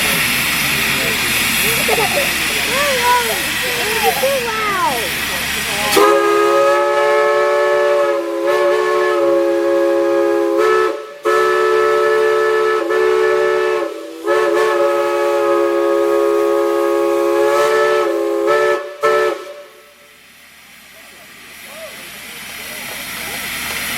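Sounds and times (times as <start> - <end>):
multi-chime steam whistle: 5.7 - 20.2.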